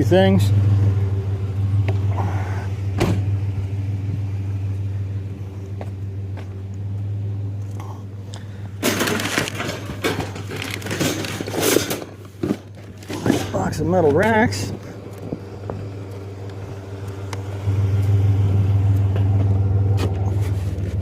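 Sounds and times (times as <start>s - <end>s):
car engine idling: 0.0s - 21.0s
loud irregular clattering: 8.8s - 13.7s.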